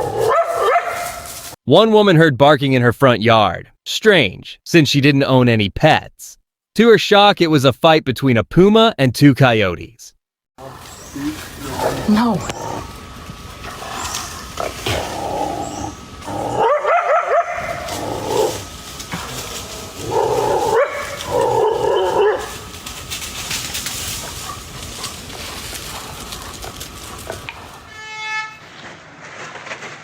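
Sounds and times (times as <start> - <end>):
coyotes barking and yipping: 0.0 - 1.5, 10.6 - 27.9.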